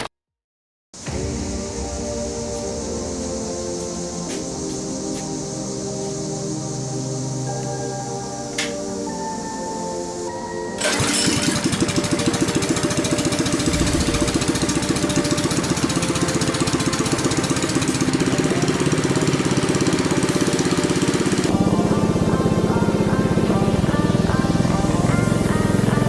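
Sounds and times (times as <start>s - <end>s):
small engine pulsing: 10.8s - 26.0s.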